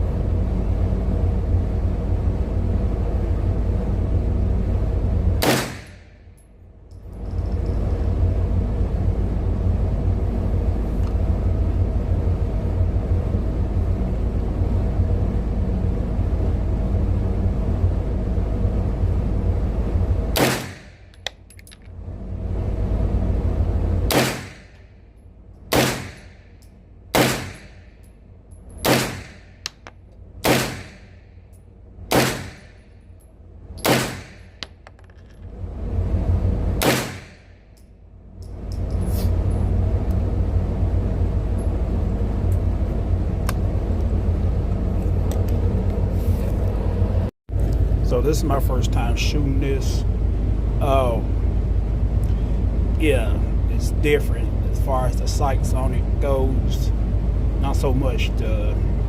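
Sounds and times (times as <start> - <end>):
steady low rumble: 0.0 - 59.0
gunshots: 5.4 - 6.0, 20.4 - 20.9, 24.1 - 24.7, 25.7 - 26.3, 27.1 - 27.8, 28.8 - 29.5, 30.4 - 31.1, 32.1 - 32.8, 33.8 - 34.5, 36.8 - 37.4.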